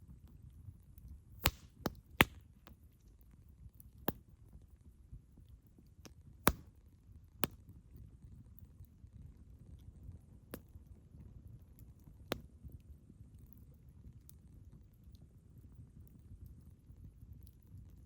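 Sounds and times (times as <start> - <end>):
low rumble of flames: 0.0 - 18.0
firewood popping: 1.4 - 2.4, 6.4 - 6.7.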